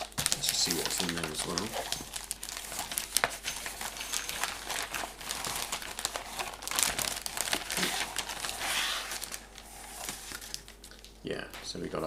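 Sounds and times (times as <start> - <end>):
paper and packaging rustling: 0.0 - 11.2.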